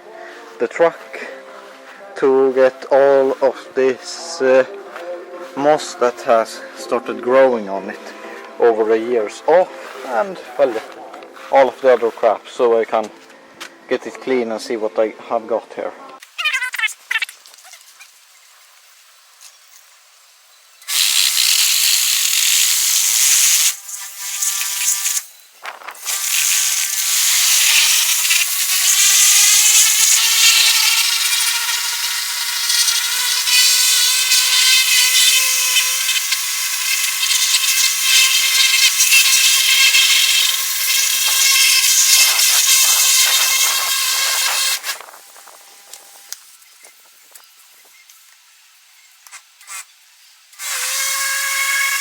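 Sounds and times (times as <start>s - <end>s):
pressure washer spray hissing: 20.8s - 25.3s, 26.0s - 45.0s.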